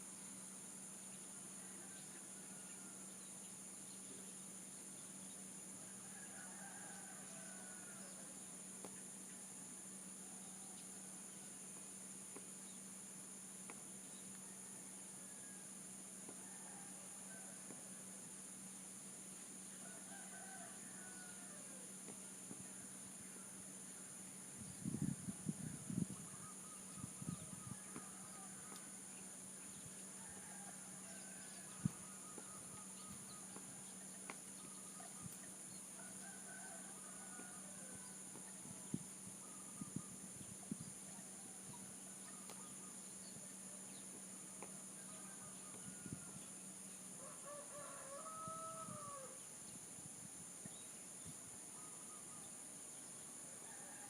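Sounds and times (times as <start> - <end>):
high insect drone: 0.0 - 54.0
rooster crowing: 5.9 - 8.2, 19.8 - 21.8, 26.1 - 29.0, 30.1 - 33.6, 36.0 - 38.2, 44.6 - 46.4, 47.2 - 49.4, 53.5 - 54.0.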